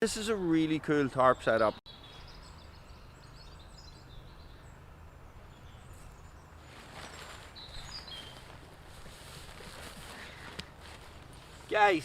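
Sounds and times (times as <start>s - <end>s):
bird chirps: 1.3s - 8.6s
rustling: 6.0s - 11.8s.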